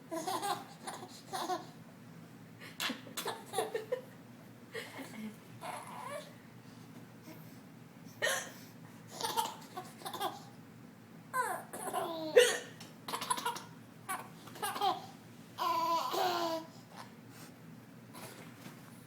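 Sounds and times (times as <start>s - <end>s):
baby laughing: 0.1s - 1.8s, 3.2s - 4.0s, 9.1s - 10.5s, 11.4s - 12.5s, 13.1s - 16.7s.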